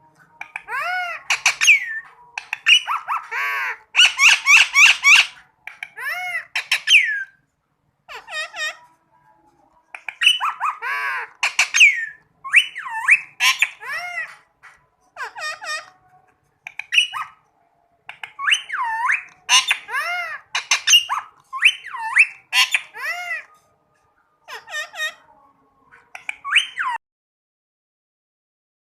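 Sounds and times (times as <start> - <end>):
parakeet squawking: 0.2 - 7.4, 8.1 - 8.9, 10.0 - 14.5, 15.2 - 16.0, 16.6 - 17.5, 18.1 - 23.6, 24.5 - 25.3, 25.9 - 27.0.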